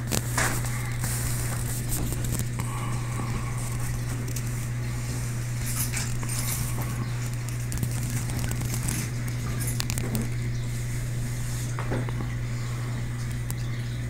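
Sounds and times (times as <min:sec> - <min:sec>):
aquarium pump humming: 0:00.0 - 0:14.0
faint clicks and crackles: 0:00.0 - 0:14.0.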